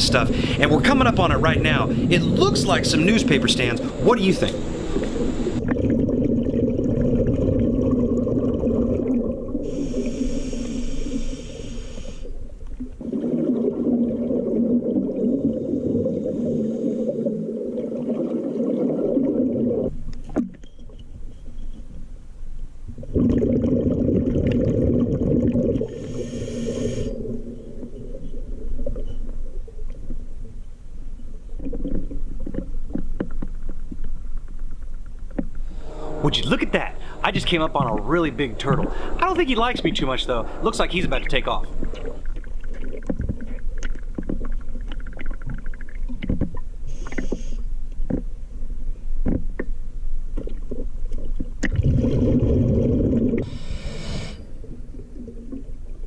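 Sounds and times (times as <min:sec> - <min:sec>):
exhaled bubbles rumbling: 0:00.0 - 0:10.2, 0:12.4 - 0:20.6, 0:22.8 - 0:47.0, 0:47.9 - 0:56.0
hissing regulator inhalations: 0:00.3 - 0:00.7, 0:09.6 - 0:12.4, 0:25.9 - 0:27.3, 0:35.6 - 0:40.8, 0:46.9 - 0:47.7, 0:53.4 - 0:54.7.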